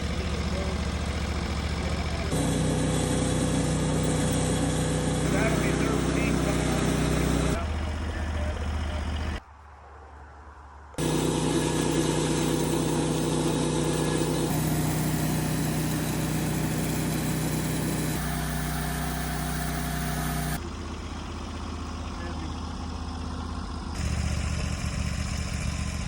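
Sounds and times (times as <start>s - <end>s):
engine running steadily: 0.0s - 9.4s, 11.0s - 26.0s
low hum: 2.2s - 21.8s.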